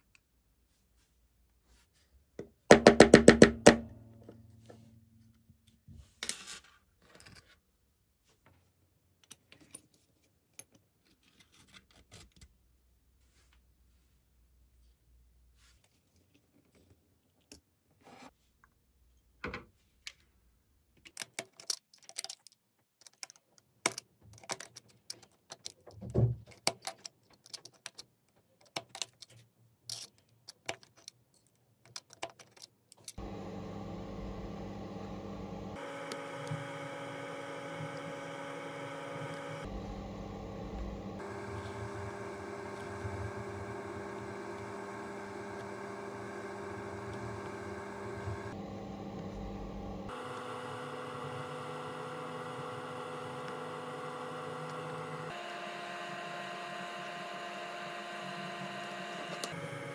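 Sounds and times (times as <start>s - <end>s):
steady electric hum: 33.2s - 44.0s.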